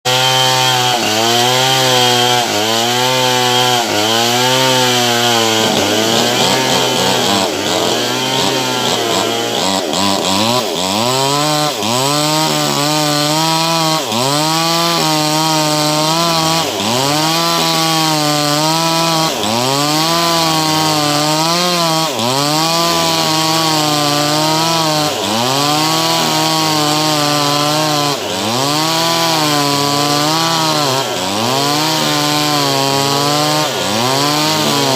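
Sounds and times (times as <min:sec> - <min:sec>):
chainsaw engine revving: 0:00.0 - 0:34.9.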